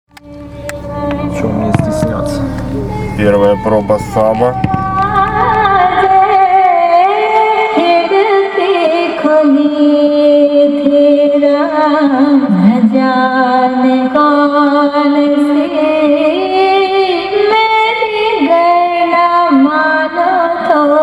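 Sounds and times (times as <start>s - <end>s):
song with high sung melody: 0.1s - 8.6s.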